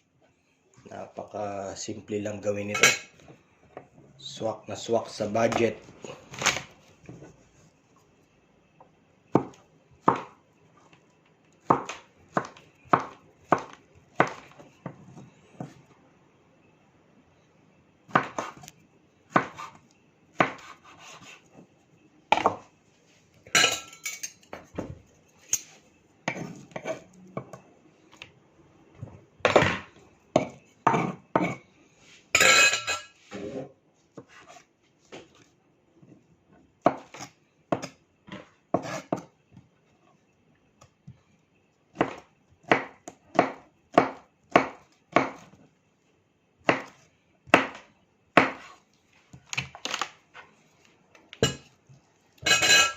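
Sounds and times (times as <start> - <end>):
knife chopping on cutting board: 9.3 - 10.3, 11.6 - 15.8, 18.1 - 18.7, 19.3 - 19.8, 20.4 - 21.4, 26.2 - 27.6, 29.5 - 31.6, 36.8 - 39.3, 42.0 - 45.6, 46.6 - 48.8.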